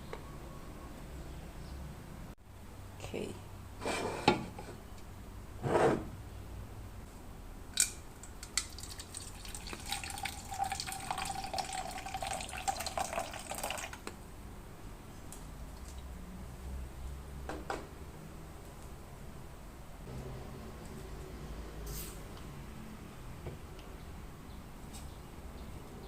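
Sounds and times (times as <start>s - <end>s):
liquid pouring into cup: 8.4s - 14.1s.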